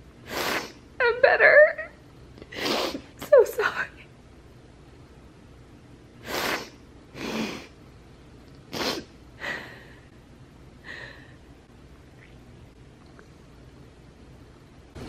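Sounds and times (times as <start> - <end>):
woman sniffling through nose: 0.2 - 0.8, 2.5 - 3.1, 6.2 - 7.8, 8.7 - 9.8.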